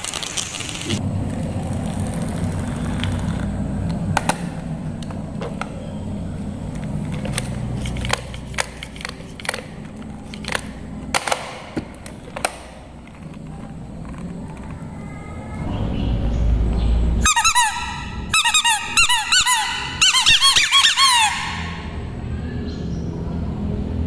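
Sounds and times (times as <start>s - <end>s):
marbles rolling rumble: 0.0s - 5.3s, 12.0s - 15.0s.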